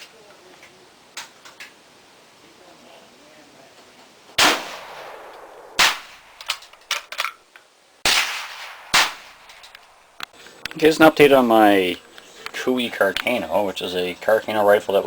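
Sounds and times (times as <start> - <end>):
rifle shots echoing: 4.4 - 7.1, 8.0 - 10.1.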